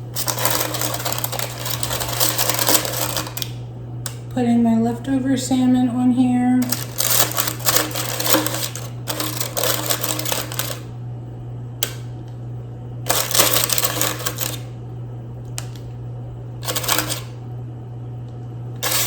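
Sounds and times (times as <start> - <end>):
steady low hum: 0.0 - 19.0
kitchen clattering and rustling: 0.2 - 3.4.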